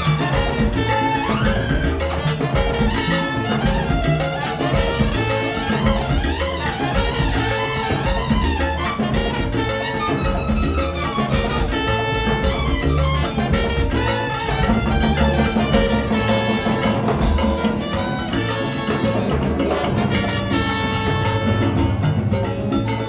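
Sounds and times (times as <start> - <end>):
bongos: 0.0 - 23.0
cowbell: 0.0 - 23.0
salsa band playing: 0.0 - 23.0.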